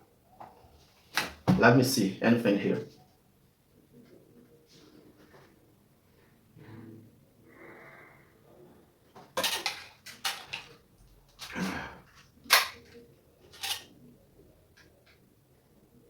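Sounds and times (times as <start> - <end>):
drone parts clicking and clattering: 9.4 - 10.7, 12.5 - 13.9.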